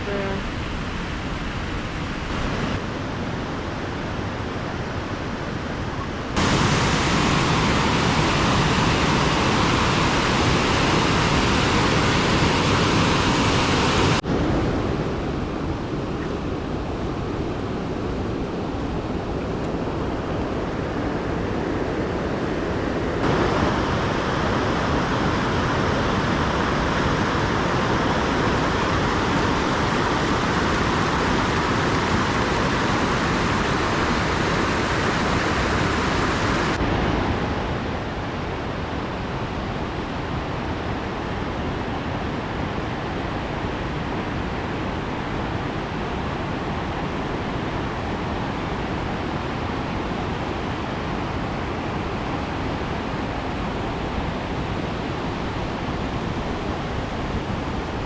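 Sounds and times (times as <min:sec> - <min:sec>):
waterfall rushing: 0:02.2 - 0:02.9, 0:06.3 - 0:14.2, 0:21.9 - 0:45.6.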